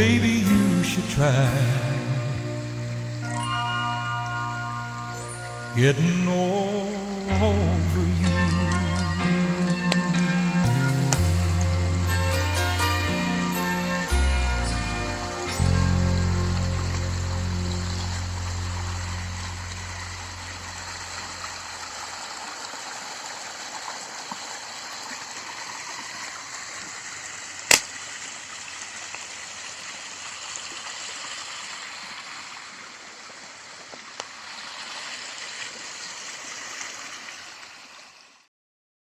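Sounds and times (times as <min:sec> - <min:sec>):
stream water running: 0:00.0 - 0:38.5
sharp click: 0:27.7 - 0:27.9.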